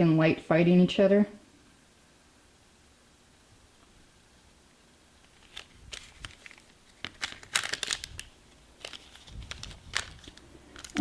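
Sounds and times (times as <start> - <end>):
foil wrapper crinkling: 5.2 - 11.0.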